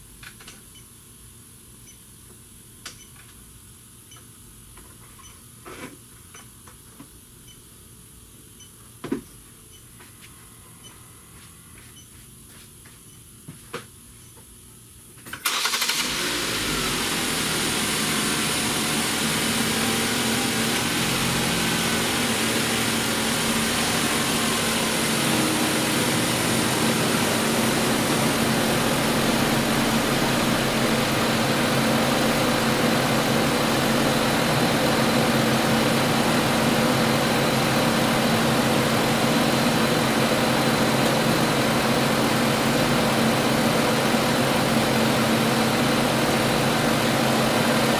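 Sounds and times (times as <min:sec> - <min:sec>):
car engine starting and idling: 0:15.4 - 0:47.9.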